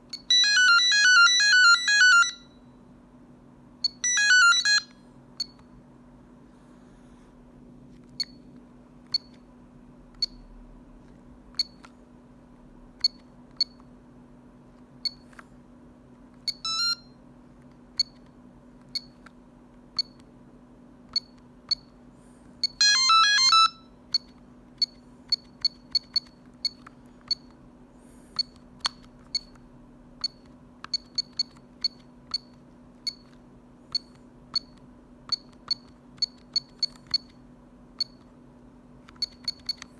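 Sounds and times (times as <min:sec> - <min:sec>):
phone keypad beeps: 0:00.1 - 0:02.6, 0:03.8 - 0:05.6, 0:16.5 - 0:17.1, 0:20.0 - 0:20.2, 0:22.6 - 0:27.5, 0:28.4 - 0:29.6, 0:30.2 - 0:33.3, 0:33.9 - 0:37.4, 0:38.0 - 0:38.2, 0:39.1 - 0:39.9
ringtone melody snippet: 0:00.3 - 0:02.5.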